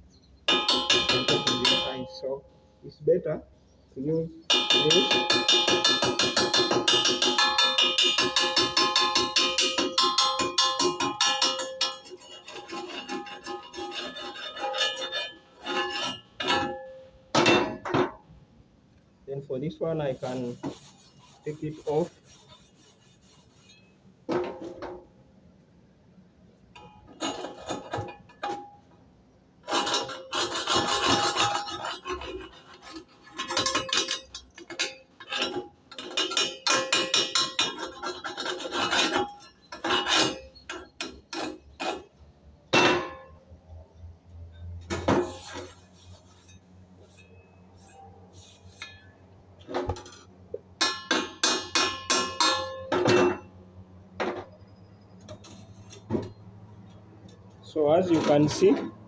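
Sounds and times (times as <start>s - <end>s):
wire brush scrubbing metal: 0.5s - 2.2s, 4.5s - 16.9s, 20.0s - 23.9s, 29.6s - 42.1s, 44.9s - 53.4s, 57.8s - 58.9s.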